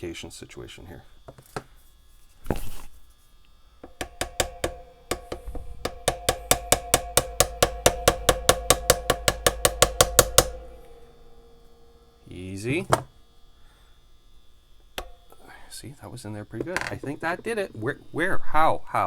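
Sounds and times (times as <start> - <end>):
tool tapping a wedge: 3.8 - 12.0, 15.0 - 15.4.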